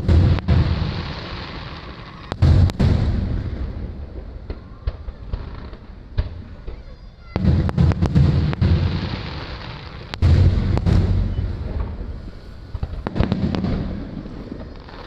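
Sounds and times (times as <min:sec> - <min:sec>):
fireworks booming: 0:00.0 - 0:15.0
sharp fireworks cracks: 0:00.0 - 0:15.0.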